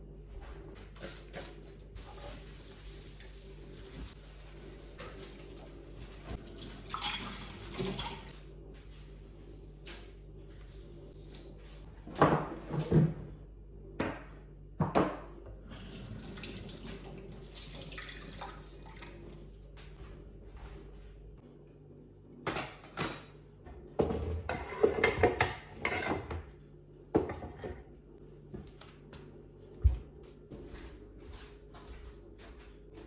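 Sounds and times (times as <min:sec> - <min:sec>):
dishes and cutlery clattering: 0:00.8 - 0:01.7, 0:22.5 - 0:23.4
tap water running into sink: 0:06.4 - 0:08.3, 0:15.9 - 0:19.4.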